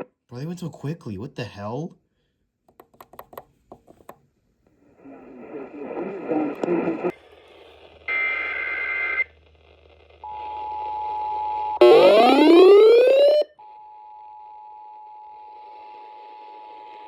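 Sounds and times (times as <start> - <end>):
data tones burst: 11.8 - 13.4
two-tone attention signal: 11.8 - 13.4.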